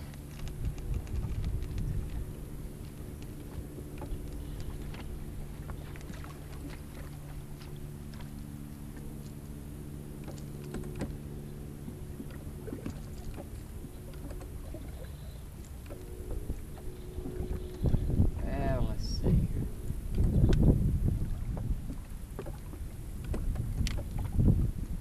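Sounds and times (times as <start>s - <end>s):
light clicks and ticks: 0.0s - 2.2s
boat motor humming: 0.0s - 25.0s.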